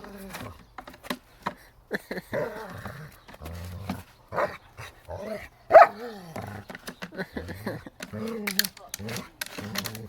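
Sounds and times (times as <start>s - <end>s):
dog growling: 2.2s - 10.0s.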